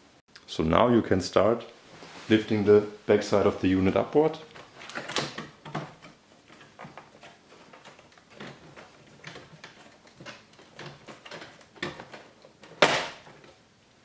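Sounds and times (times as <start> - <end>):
plastic housing creaking and clicking: 4.5 - 13.5.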